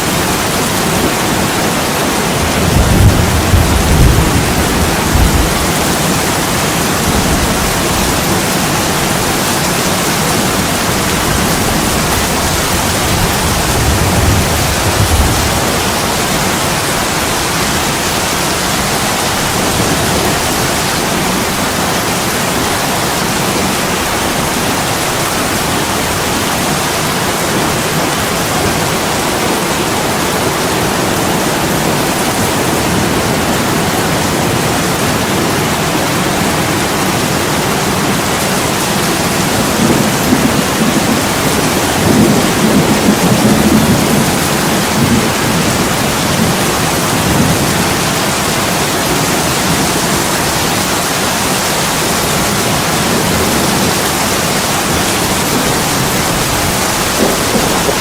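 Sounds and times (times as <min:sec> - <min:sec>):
heavy rain on a window: 0:00.0 - 0:58.0
low rumbles of thunder: 0:02.4 - 0:09.0, 0:11.1 - 0:17.9.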